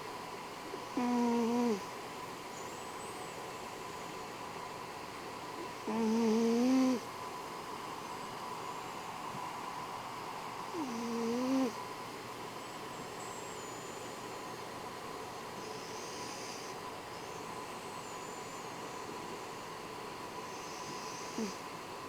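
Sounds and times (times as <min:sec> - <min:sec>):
soft hissing breath: 0:00.0 - 0:04.3, 0:05.1 - 0:22.0
steady background hiss: 0:00.0 - 0:22.0
cat snoring: 0:00.7 - 0:01.9, 0:05.6 - 0:07.1, 0:10.7 - 0:11.8, 0:15.6 - 0:16.8, 0:20.5 - 0:21.7.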